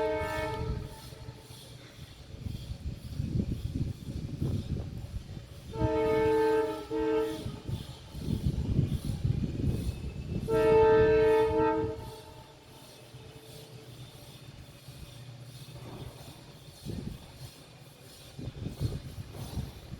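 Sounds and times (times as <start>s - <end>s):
locomotive horn blasts: 0.0s - 1.5s, 5.6s - 8.6s, 9.8s - 13.6s.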